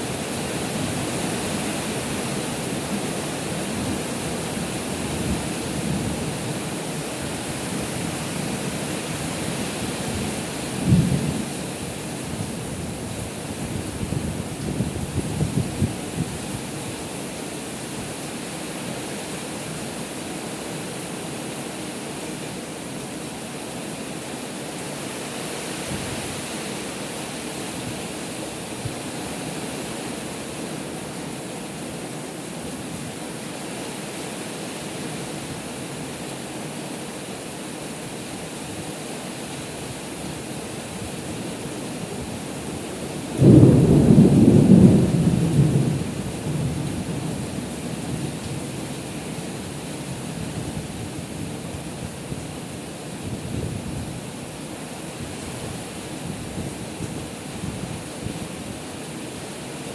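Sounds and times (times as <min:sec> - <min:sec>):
heavy rain pouring: 0:00.0 - 0:59.9
thunder clap and rumble: 0:43.4 - 0:47.5.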